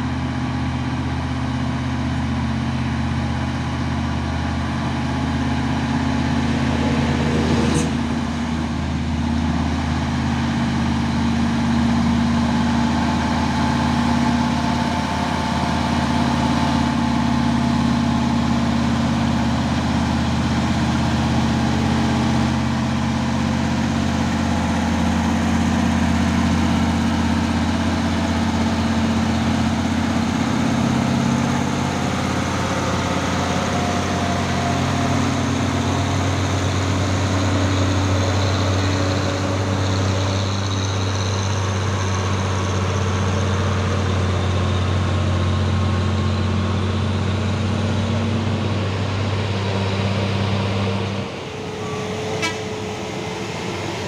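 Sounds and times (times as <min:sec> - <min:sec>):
truck diesel engine running: 0:00.0 - 0:54.0
brief click: 0:52.4 - 0:52.7.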